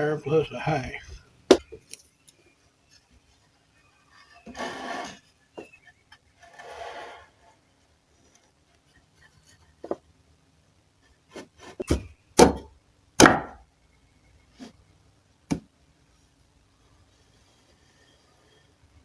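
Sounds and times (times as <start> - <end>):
wooden knocks and clunks: 1.5 - 1.8, 11.3 - 13.6.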